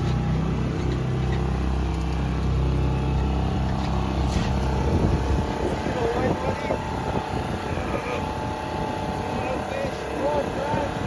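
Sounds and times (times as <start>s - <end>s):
boat motor running: 0.0s - 11.0s
water wash: 0.0s - 11.0s
wind noise: 3.0s - 11.0s.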